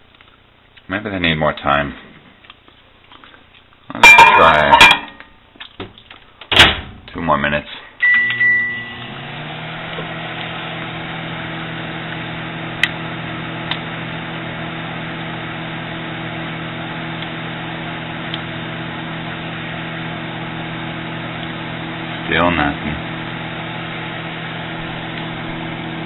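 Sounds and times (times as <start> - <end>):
microwave oven humming: 8.0 - 26.0.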